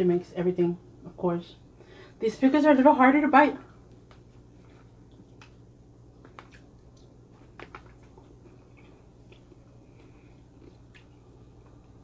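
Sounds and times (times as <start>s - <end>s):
low steady hum: 0.0s - 12.0s
soft chewing crunches: 3.8s - 12.0s.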